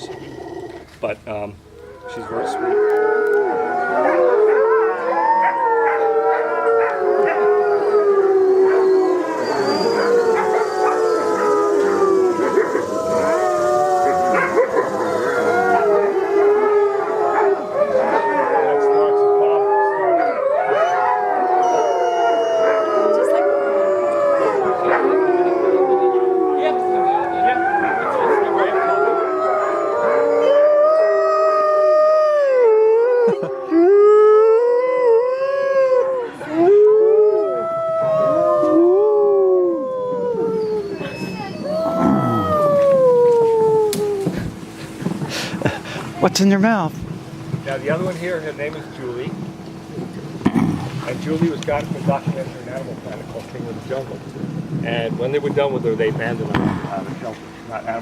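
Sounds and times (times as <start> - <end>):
wolves howling: 0.0 - 0.9, 1.7 - 45.2.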